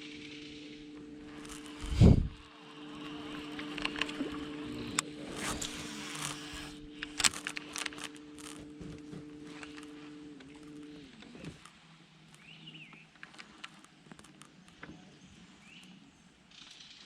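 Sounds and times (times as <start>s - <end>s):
boat motor humming: 0.0s - 16.5s
light clicks and ticks: 6.1s - 15.1s.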